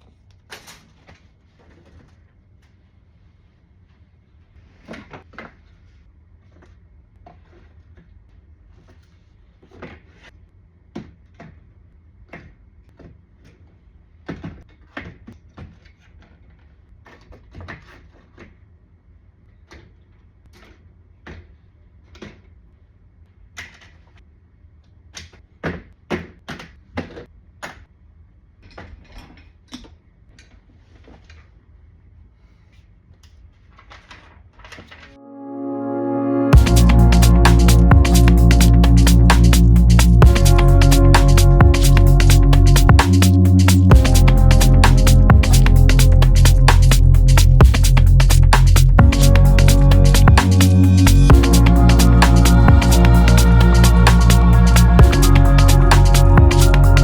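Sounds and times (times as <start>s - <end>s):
steady low hum: 35.2s - 57.0s.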